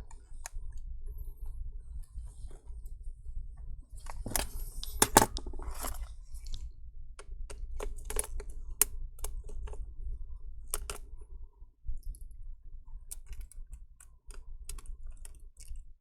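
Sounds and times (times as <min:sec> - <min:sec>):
low steady hum: 0:00.0 - 0:16.0
plastic parts scraping: 0:04.0 - 0:06.6
small sharp plastic clicks: 0:07.2 - 0:09.8, 0:10.7 - 0:11.0, 0:13.1 - 0:15.8.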